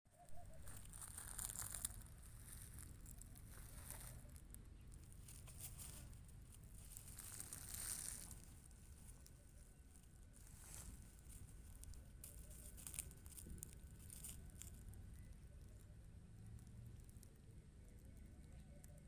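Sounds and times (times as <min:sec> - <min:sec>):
kitten scratching litter: 0:05.1 - 0:15.8.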